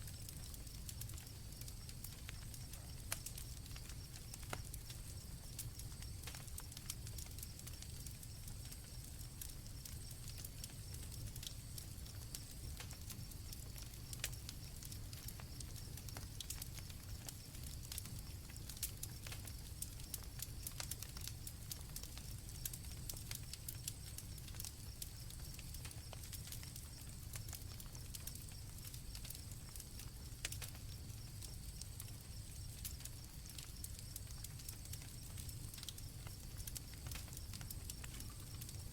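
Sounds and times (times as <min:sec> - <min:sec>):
campfire crackling and popping: 0:00.0 - 0:38.9
crickets chirping: 0:22.2 - 0:38.9.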